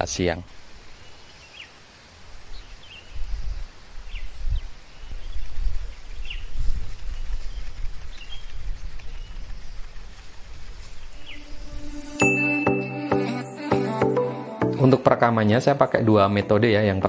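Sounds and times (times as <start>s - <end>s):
wind gusting over microphone: 2.3s - 12.2s.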